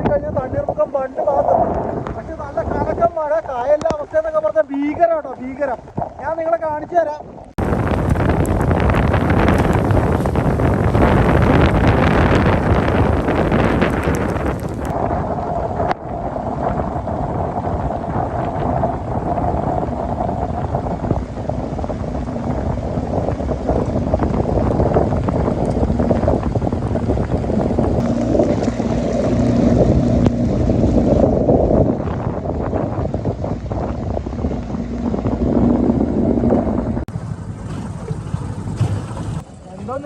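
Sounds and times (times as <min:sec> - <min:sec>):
wind buffeting microphone: 0:00.0 - 0:40.0
boat motor running: 0:07.6 - 0:15.0, 0:19.7 - 0:40.0.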